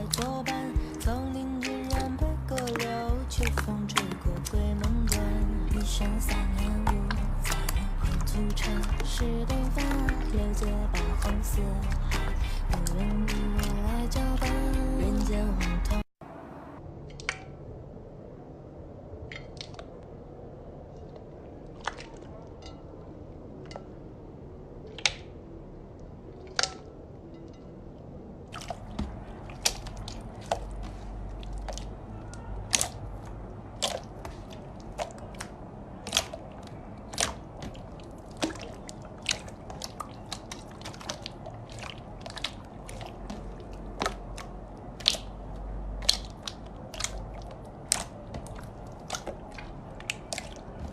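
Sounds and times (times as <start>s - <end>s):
slime squishing and popping: 46.0s - 50.9s.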